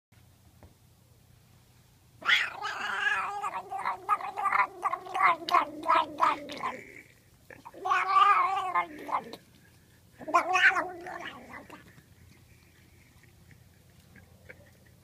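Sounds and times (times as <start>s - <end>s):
cat making wavering calls: 2.2s - 9.5s, 10.2s - 12.0s.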